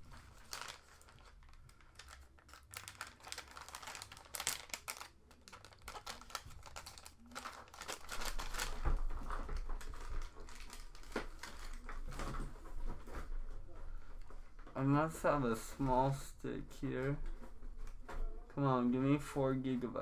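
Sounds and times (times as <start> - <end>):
rummaging through plastic parts: 0.0 - 13.6.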